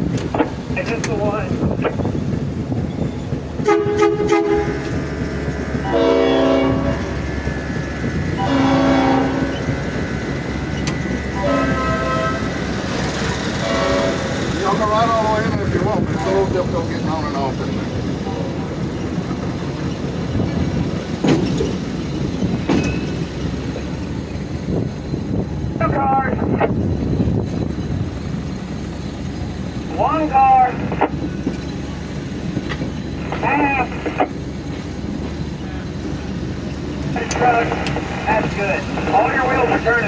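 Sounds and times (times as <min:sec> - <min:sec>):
motorcars rumbling: 0:00.0 - 0:40.0
railroad motorcar horns: 0:03.6 - 0:19.8, 0:33.0 - 0:34.8, 0:35.6 - 0:40.0.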